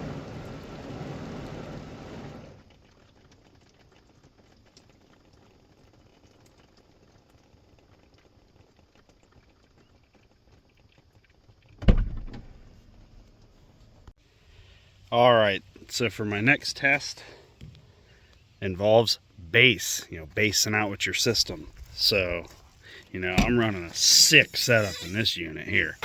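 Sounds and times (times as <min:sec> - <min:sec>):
heavy rain on car body: 0:00.0 - 0:08.9
loud deep thump: 0:11.8 - 0:12.8, 0:23.4 - 0:23.6.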